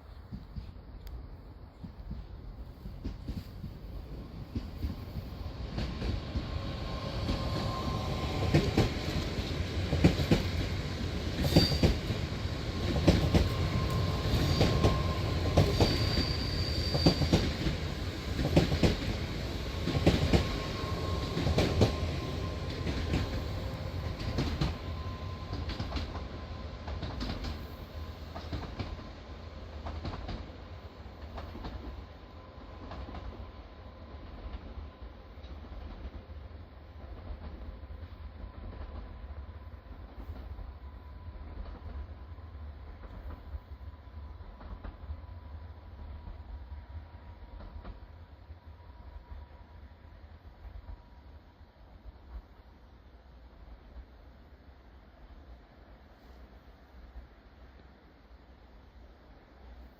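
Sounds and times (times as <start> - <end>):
train rumbling on rails: 0.0 - 59.9
high wheel squeals: 6.8 - 8.6, 11.4 - 12.1, 13.4 - 17.5.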